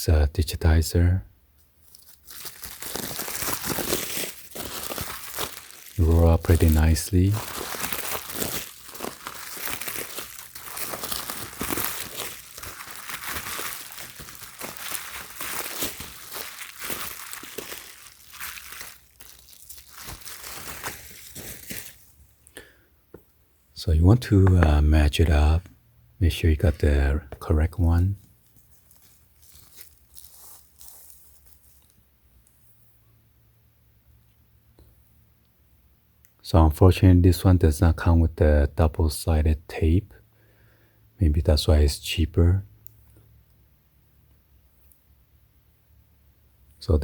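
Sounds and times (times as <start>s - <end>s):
plastic packaging crinkling: 1.8s - 22.5s, 26.6s - 32.0s.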